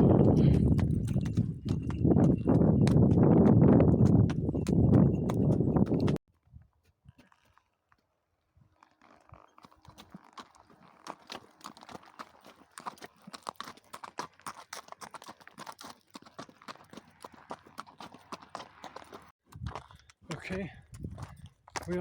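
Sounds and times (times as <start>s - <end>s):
horse hooves clip-clopping: 0.0s - 6.2s, 8.7s - 22.0s.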